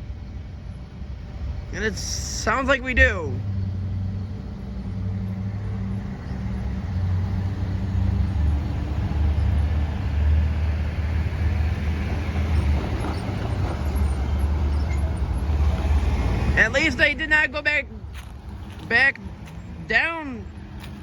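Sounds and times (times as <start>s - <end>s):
low engine rumble: 0.0s - 21.0s.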